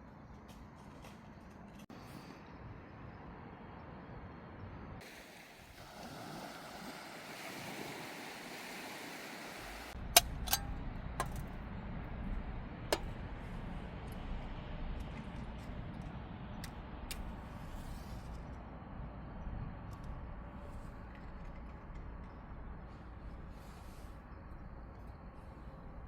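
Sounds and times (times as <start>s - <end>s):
low rumble: 10.0s - 23.6s.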